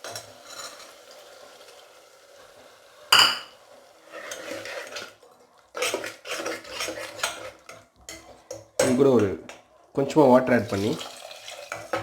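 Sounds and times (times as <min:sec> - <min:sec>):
utensils scraping: 0:05.8 - 0:07.6.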